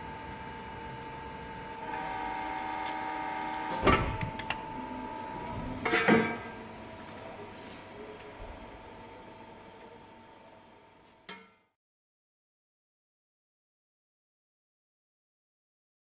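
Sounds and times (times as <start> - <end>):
hydraulic press humming: 1.8 - 10.0.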